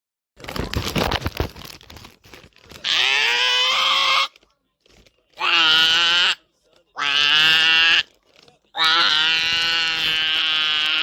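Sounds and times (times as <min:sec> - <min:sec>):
person screaming: 0:08.8 - 0:11.0.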